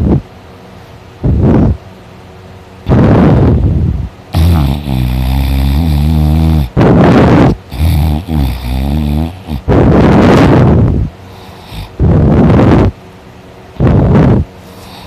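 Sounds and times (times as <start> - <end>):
harsh rushes of breath: 2.9 - 13.0, 13.8 - 15.0
man snoring loudly: 4.3 - 12.9, 13.8 - 15.0.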